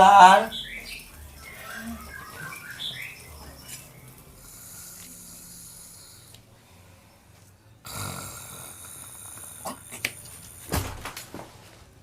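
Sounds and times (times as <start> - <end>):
person snoring: 4.4 - 6.4, 7.8 - 10.7.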